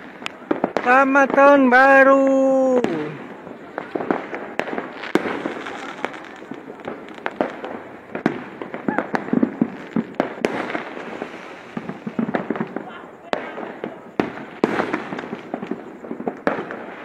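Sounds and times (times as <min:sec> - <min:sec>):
distant fireworks crackling: 0:00.0 - 0:17.0
firecrackers banging and popping: 0:00.0 - 0:17.0.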